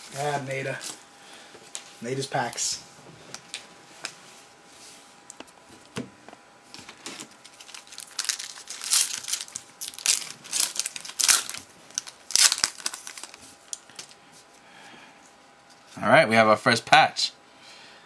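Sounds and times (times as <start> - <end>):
foil wrapper tearing and crinkling: 6.9 - 14.1.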